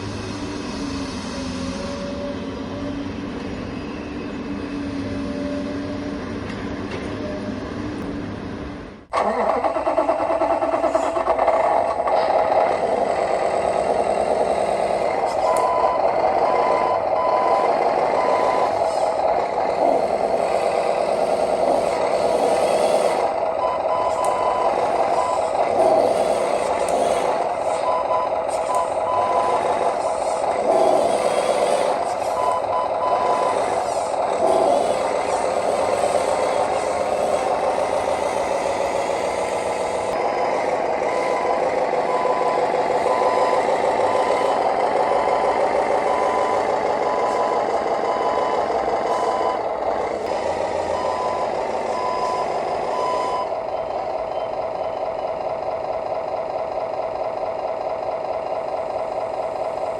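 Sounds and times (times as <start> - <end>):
model machinery running: 7.7 - 59.9
reversing beeper: 14.9 - 19.2, 23.5 - 25.7, 27.7 - 30.0, 31.9 - 40.2, 40.8 - 49.8, 50.8 - 55.4.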